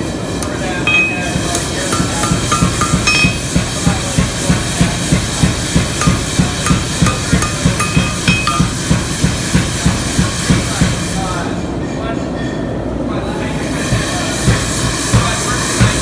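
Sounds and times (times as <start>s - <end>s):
anvil ringing tones: 0.9s - 3.8s, 6.0s - 9.1s
hammer striking steel on anvil: 0.9s - 9.7s.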